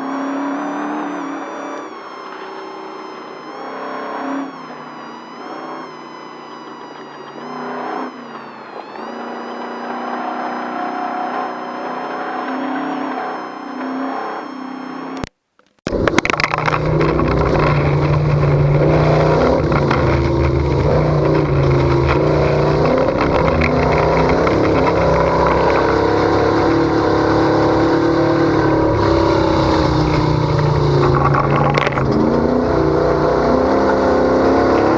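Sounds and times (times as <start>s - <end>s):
driving noise: 0.0s - 34.9s
truck engine running hard: 15.9s - 34.9s.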